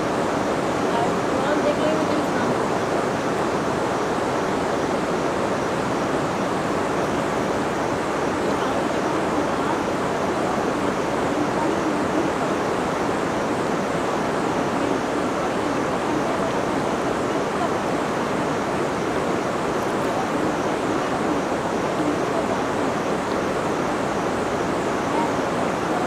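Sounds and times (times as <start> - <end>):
river water rushing: 0.0 - 26.0.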